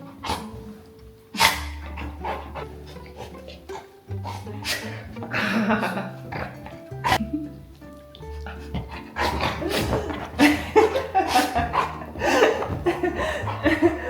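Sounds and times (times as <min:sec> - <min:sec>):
background music: 0:00.0 - 0:14.0
dog play-growling: 0:01.4 - 0:05.4, 0:06.1 - 0:07.2, 0:08.2 - 0:14.0.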